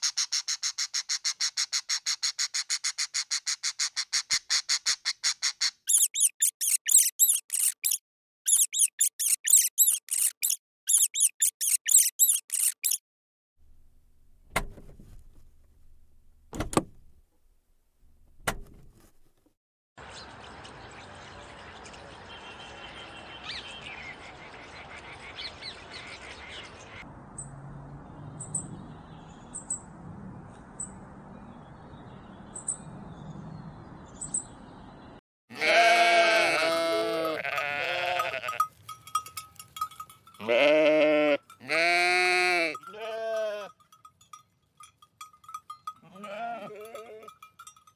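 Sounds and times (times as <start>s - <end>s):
faint high chirps: 5.9s - 13.0s
sheep or goats bleating: 35.5s - 38.7s, 40.4s - 43.8s, 46.0s - 47.4s.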